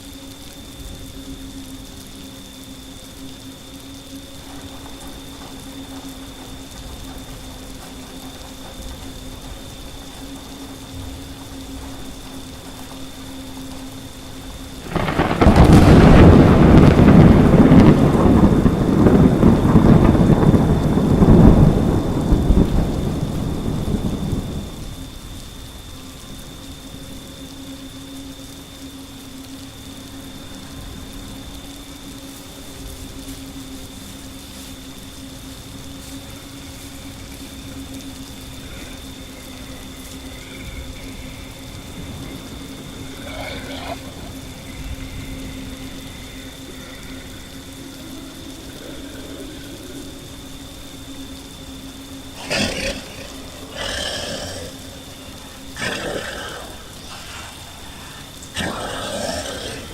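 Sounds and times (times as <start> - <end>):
faint constant hum: 0.0 - 59.9
steady rain: 0.0 - 59.9
thunder rumbling: 0.0 - 59.9
low rumble: 35.0 - 59.9.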